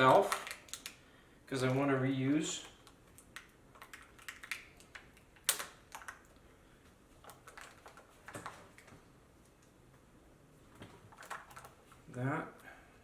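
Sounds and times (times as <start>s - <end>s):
tape peeling and crackling: 0.0s - 1.0s.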